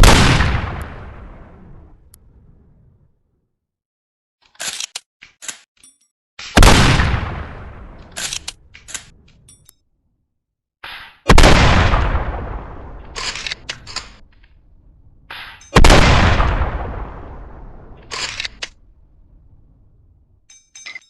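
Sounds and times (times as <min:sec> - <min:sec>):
shotgun shots echoing: 0:00.0 - 0:01.5, 0:06.6 - 0:08.4, 0:10.9 - 0:14.3, 0:15.3 - 0:18.6
metallic clacks of shotgun slide: 0:04.4 - 0:06.6, 0:08.0 - 0:09.8.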